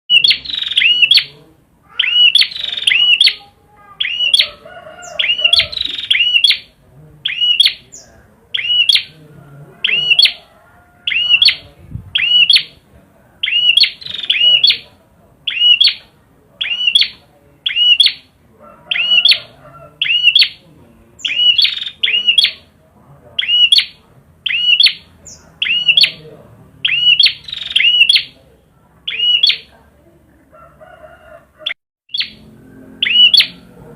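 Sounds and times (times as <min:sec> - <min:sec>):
bird chirping song: 0:00.1 - 0:22.8, 0:23.4 - 0:29.8, 0:32.1 - 0:33.9.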